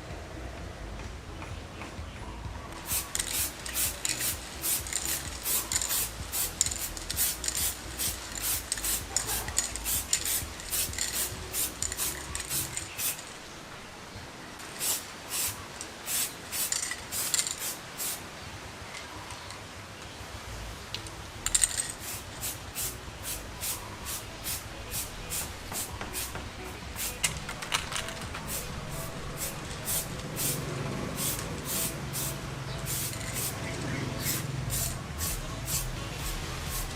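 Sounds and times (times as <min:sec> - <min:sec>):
sandpaper scraping metal: 0:02.8 - 0:13.3.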